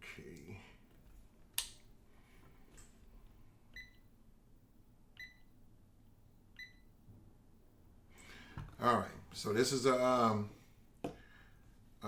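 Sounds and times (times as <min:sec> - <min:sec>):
multimeter short high beeps: 0:05.2 - 0:05.6, 0:06.6 - 0:07.0.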